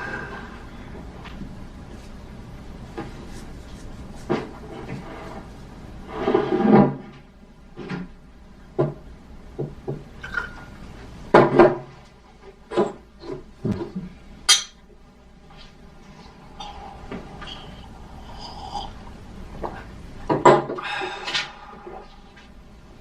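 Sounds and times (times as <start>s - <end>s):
glasses and dishes clinking: 14.5s - 14.8s.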